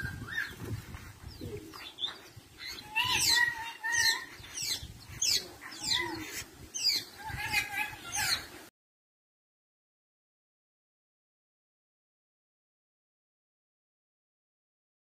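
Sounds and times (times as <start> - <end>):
shrike singing: 0.0 - 8.5.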